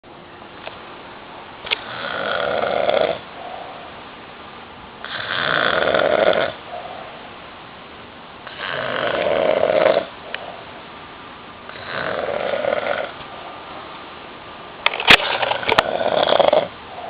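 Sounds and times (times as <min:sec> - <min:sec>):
man snoring loudly: 0:01.8 - 0:03.2, 0:05.0 - 0:06.6, 0:08.5 - 0:10.1, 0:11.7 - 0:13.2, 0:15.8 - 0:16.8
quiet breathing: 0:03.2 - 0:04.0, 0:06.6 - 0:07.3, 0:10.1 - 0:10.9.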